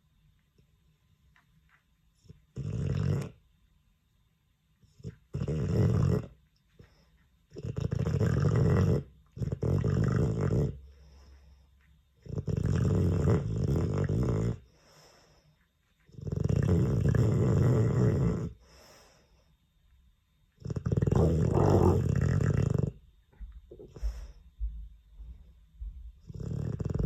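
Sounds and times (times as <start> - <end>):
dog snoring: 2.2 - 3.4, 4.8 - 6.9, 7.5 - 11.3, 12.2 - 15.1, 16.1 - 19.1, 20.6 - 23.0, 26.2 - 27.0.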